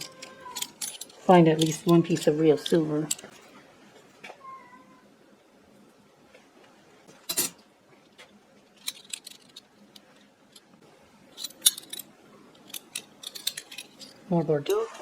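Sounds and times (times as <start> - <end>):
cutlery clinking and clattering: 0.0 - 3.4, 7.2 - 7.6, 11.4 - 14.2.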